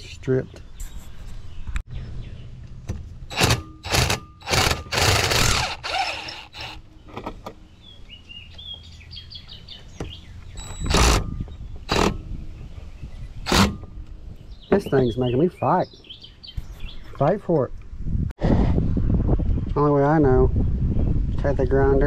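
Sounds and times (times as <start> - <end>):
cordless drill bursts: 3.3 - 6.8, 10.8 - 11.2, 13.5 - 13.7
bird chirping rapidly: 3.3 - 17.3.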